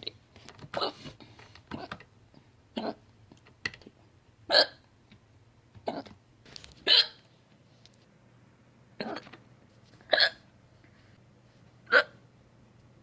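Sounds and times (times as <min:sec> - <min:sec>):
person hiccuping: 0:02.8 - 0:03.0, 0:04.5 - 0:04.8, 0:05.8 - 0:06.1, 0:06.9 - 0:07.2, 0:09.0 - 0:09.4, 0:10.1 - 0:10.4, 0:11.9 - 0:12.2.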